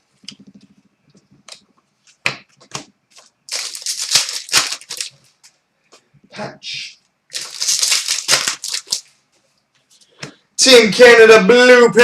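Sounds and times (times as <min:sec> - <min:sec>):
cards rustling while shuffled: 0:07.3 - 0:09.2.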